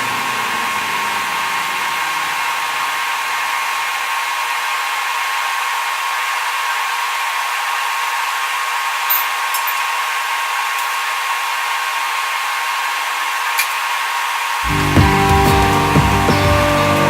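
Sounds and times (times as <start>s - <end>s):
steady hiss: 0.0s - 17.0s
loud music: 14.6s - 17.0s.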